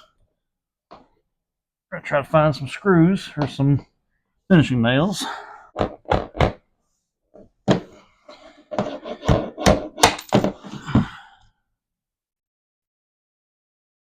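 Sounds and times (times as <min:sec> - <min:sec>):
tools knocking and clunking: 0:05.8 - 0:06.6, 0:07.4 - 0:11.1.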